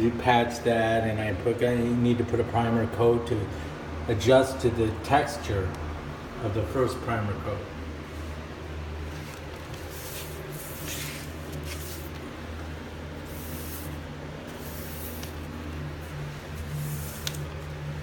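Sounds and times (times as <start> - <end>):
steady low hum: 0.0 - 18.0
paintbrush strokes swishing on wood: 9.2 - 12.2, 13.3 - 15.5, 16.5 - 17.5.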